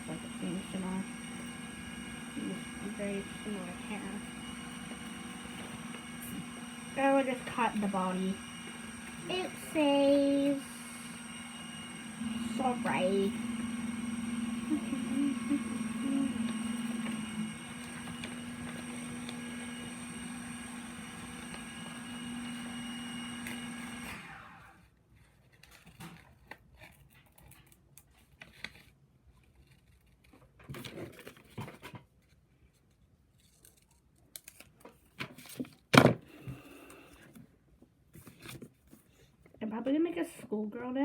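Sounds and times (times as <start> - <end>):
steady hum: 0.0 - 20.0
scissors cutting paper: 33.4 - 34.8.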